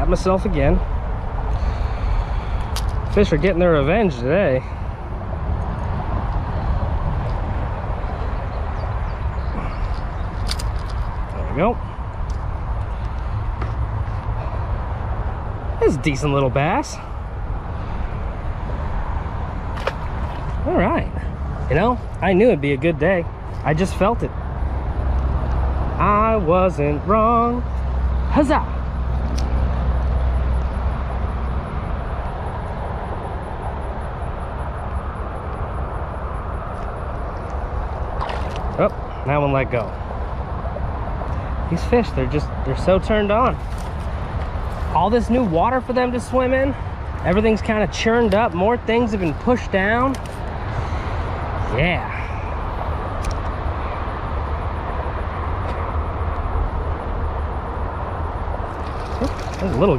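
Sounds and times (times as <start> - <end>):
wind buffeting microphone: 0.0 - 28.2
highway traffic rumble: 0.0 - 59.9.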